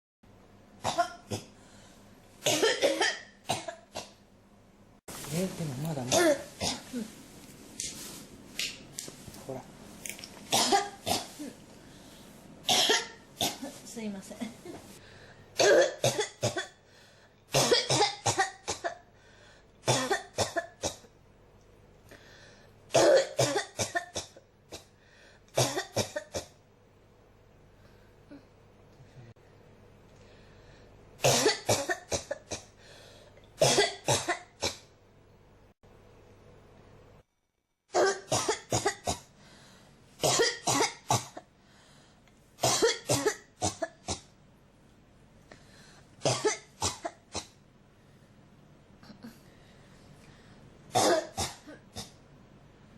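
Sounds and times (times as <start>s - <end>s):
person coughing: 2.4s - 4.2s, 6.0s - 7.1s, 10.5s - 11.6s, 12.7s - 13.8s, 15.6s - 16.8s, 17.6s - 19.1s, 23.0s - 24.9s, 40.2s - 41.5s, 42.6s - 44.3s, 50.9s - 52.2s.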